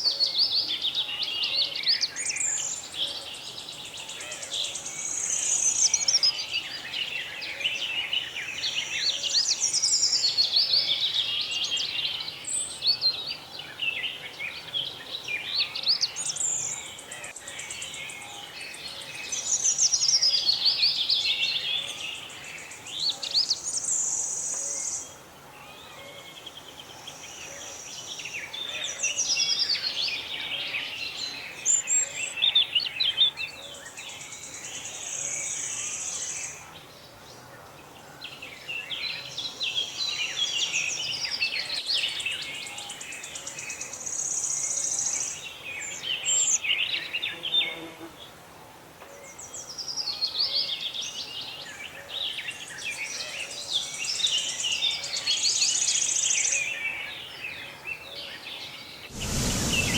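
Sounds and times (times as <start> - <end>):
birds singing and chirping: 0.0 - 36.8, 49.1 - 59.9.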